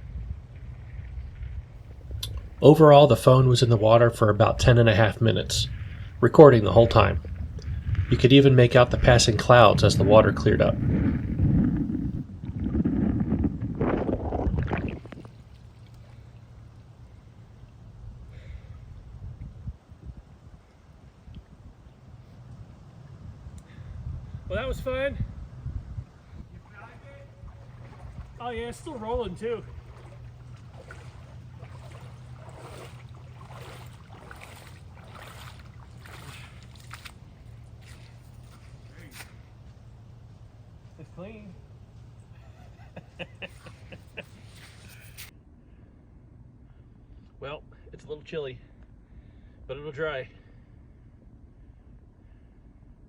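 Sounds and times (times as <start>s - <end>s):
faint low rumble: 0.0s - 53.0s
steady low hum: 0.0s - 53.0s
water sloshing and gurgling: 0.5s - 17.9s, 26.2s - 39.6s.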